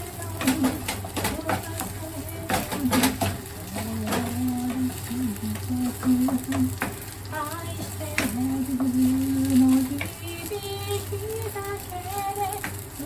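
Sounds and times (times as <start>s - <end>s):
spatula scraping and knocking pan: 0.0s - 4.9s
rice sizzling in a pan: 0.0s - 13.0s.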